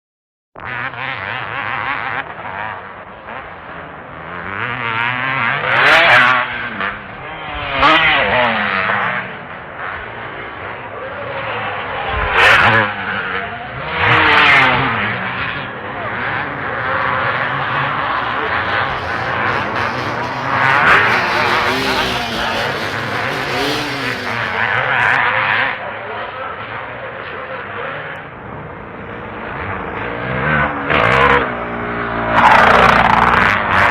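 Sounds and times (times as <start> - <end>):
motocross bikes revving past: 0.6 - 33.9.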